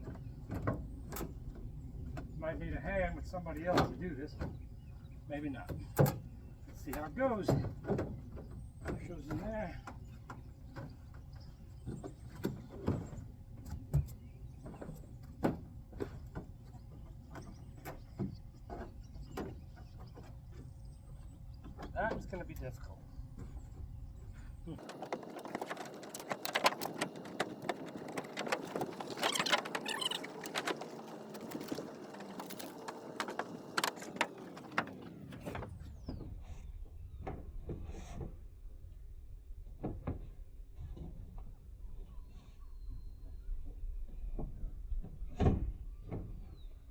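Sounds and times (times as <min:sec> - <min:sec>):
plastic scraping and rubbing: 0:24.7 - 0:35.8.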